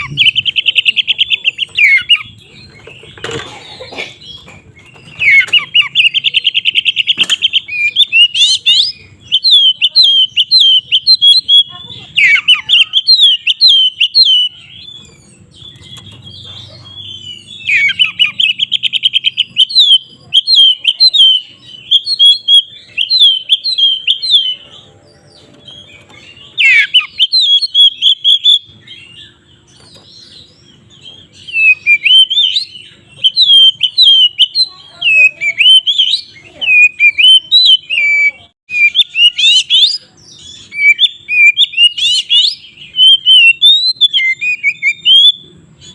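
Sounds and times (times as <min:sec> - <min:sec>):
bird singing whistled phrases: 0:05.0 - 0:15.1, 0:17.1 - 0:24.6, 0:25.9 - 0:29.4, 0:31.4 - 0:45.9.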